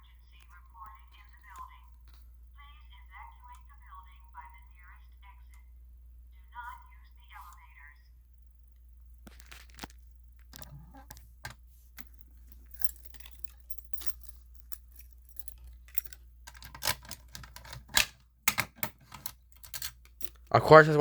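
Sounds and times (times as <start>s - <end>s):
steady low hum: 0.0s - 21.0s
objects being handled: 9.2s - 20.5s.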